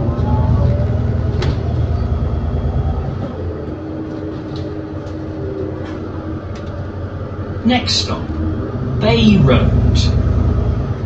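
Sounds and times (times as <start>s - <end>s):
bus engine throbbing: 0.0s - 11.0s.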